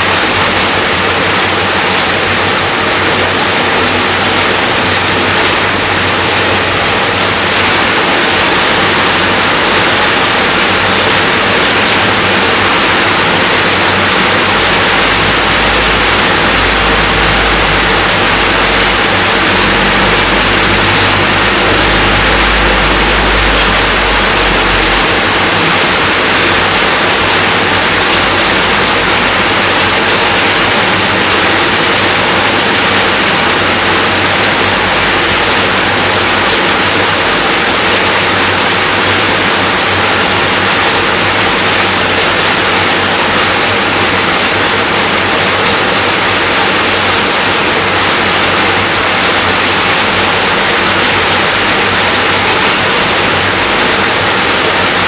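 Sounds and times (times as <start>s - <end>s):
steady rainfall: 0.0s - 55.0s
low rumble: 14.3s - 29.4s.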